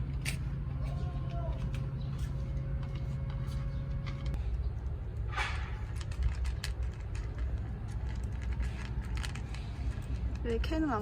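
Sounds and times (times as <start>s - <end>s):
low traffic rumble: 0.0s - 11.0s
cat crunching dry kibble: 4.8s - 11.0s.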